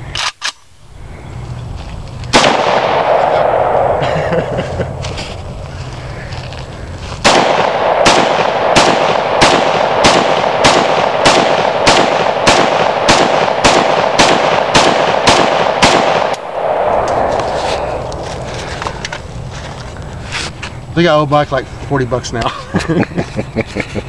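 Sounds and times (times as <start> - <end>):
rifle single shots ringing: 2.3 - 4.0, 7.2 - 17.5.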